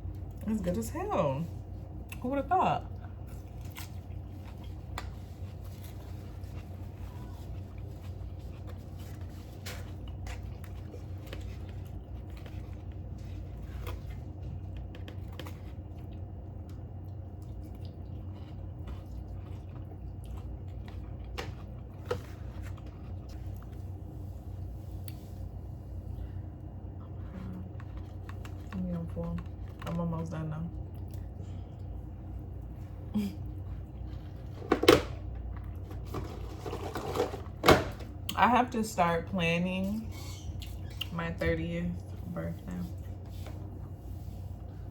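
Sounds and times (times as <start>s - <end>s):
low hum: 0.0s - 44.9s
soft chewing: 2.9s - 34.6s, 40.1s - 41.2s.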